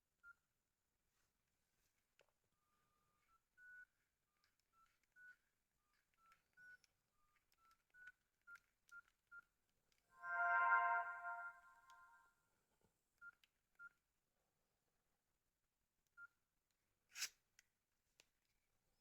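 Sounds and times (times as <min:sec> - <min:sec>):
short electronic beeps: 0:10.2 - 0:12.2.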